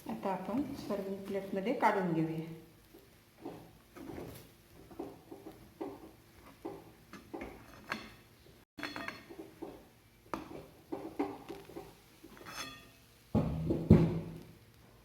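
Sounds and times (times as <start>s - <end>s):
spoon scraping a pan and plate: 5.0s - 13.1s.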